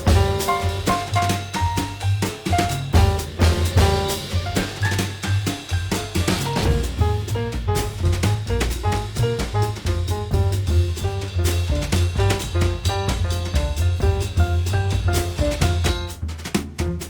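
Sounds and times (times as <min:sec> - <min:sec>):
walking bass line: 0:00.0 - 0:01.5, 0:02.9 - 0:04.4, 0:06.6 - 0:17.0
drum kit beat: 0:00.0 - 0:17.0
jazz music: 0:00.0 - 0:17.0.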